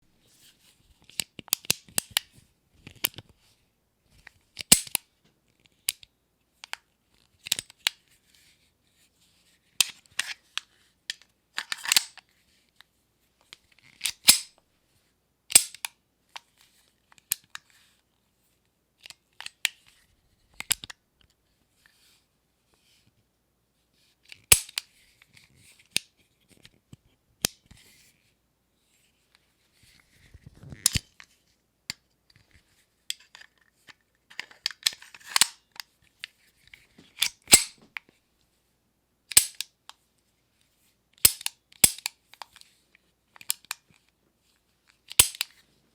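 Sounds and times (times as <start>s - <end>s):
handgun metallic clicks and clacks: 4.6s - 5.0s, 11.1s - 12.2s, 13.9s - 14.6s, 15.5s - 15.9s, 24.5s - 24.8s, 34.3s - 35.9s, 37.2s - 37.9s, 39.3s - 39.8s, 41.2s - 42.6s, 43.4s - 44.0s, 45.1s - 45.6s
handgun slide sliding clacks: 4.6s - 5.0s, 9.8s - 12.2s, 14.0s - 14.6s, 15.5s - 15.9s, 24.3s - 24.8s, 34.4s - 35.9s, 37.2s - 37.8s, 39.3s - 39.7s, 41.2s - 42.7s, 45.1s - 45.6s.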